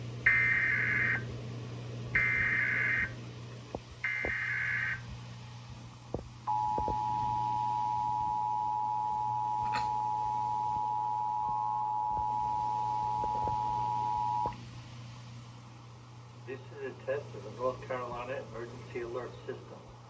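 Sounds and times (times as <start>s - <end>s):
digital data header bursts: 2.2s - 3.1s, 4.1s - 5.0s
steady two-tone attention signal: 6.5s - 14.5s.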